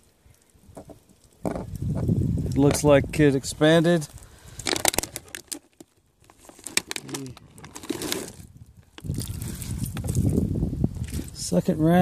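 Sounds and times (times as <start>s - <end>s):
plastic bottles crinkling: 3.9s - 10.4s.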